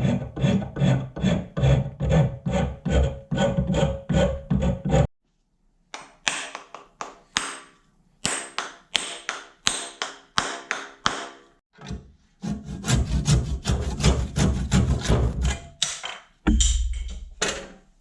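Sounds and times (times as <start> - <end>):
file rubbing on metal: 0.0 - 5.1, 12.4 - 15.6.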